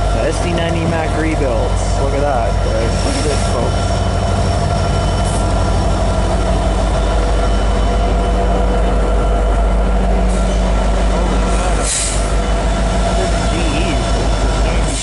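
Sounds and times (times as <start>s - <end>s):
freight train wheels rumbling: 0.0s - 15.0s
air brake hiss: 11.7s - 12.3s.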